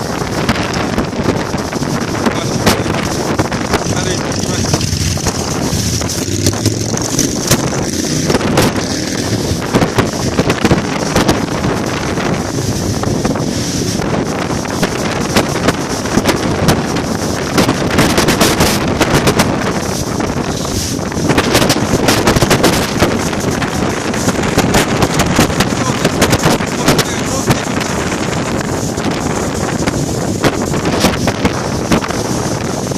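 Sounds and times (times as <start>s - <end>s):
wind buffeting microphone: 0.0s - 32.9s.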